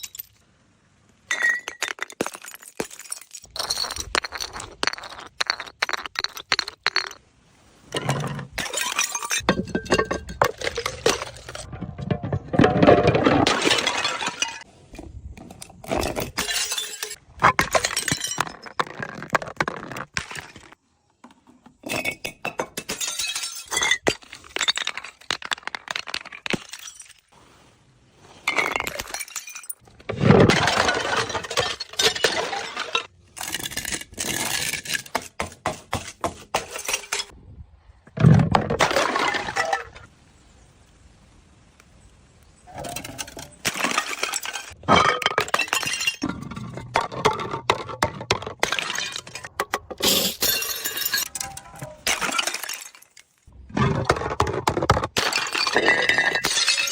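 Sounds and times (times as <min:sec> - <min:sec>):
glass bottles shattering: 0:00.0 - 0:00.4, 0:01.3 - 0:07.2, 0:07.9 - 0:14.7, 0:15.8 - 0:20.8, 0:21.8 - 0:27.3, 0:28.4 - 0:35.4, 0:36.5 - 0:37.3, 0:38.3 - 0:40.1, 0:42.8 - 0:56.9
glass shards clinking: 0:00.0 - 0:00.4, 0:08.0 - 0:14.6, 0:16.1 - 0:18.6, 0:48.6 - 0:53.2, 0:55.2 - 0:56.9.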